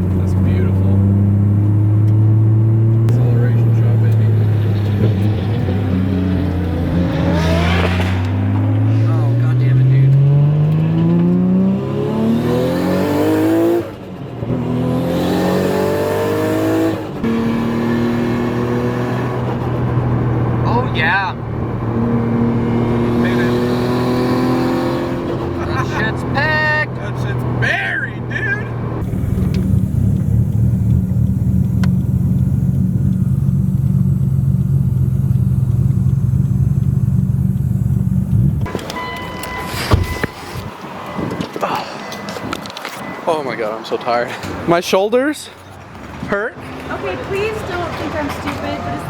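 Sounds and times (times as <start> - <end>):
car engine revving under acceleration: 0.0 - 38.8.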